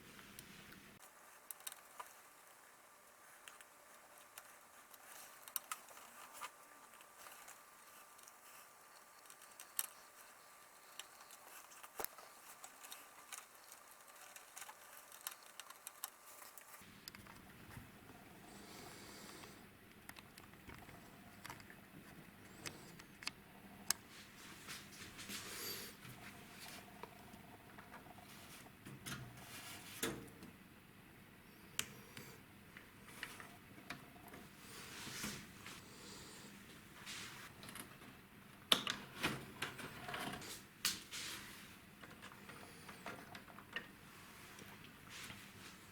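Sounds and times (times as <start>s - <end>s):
clicks and rustling of hands: 3.4s - 17.8s.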